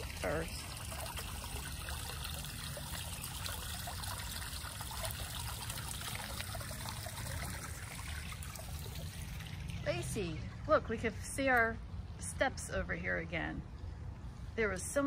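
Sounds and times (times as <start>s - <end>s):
water trickling: 0.0s - 10.8s.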